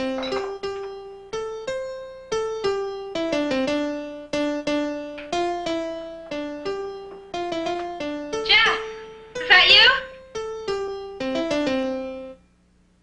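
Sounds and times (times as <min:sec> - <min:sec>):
piano melody: 0:00.0 - 0:12.5.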